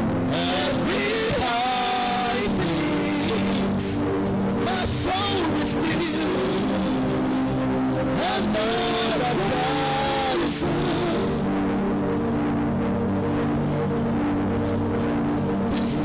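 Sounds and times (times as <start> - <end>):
person singing: 0.0 - 7.4, 8.1 - 11.6, 15.7 - 16.0
held keyboard chords: 0.0 - 16.0.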